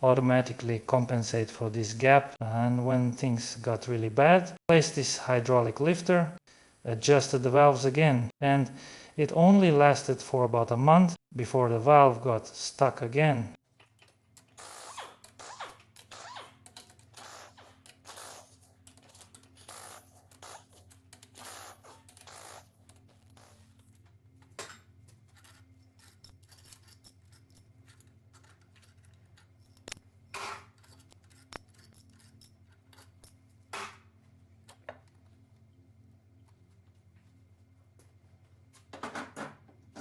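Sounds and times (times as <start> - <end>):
metal scraping: 24.6 - 33.3.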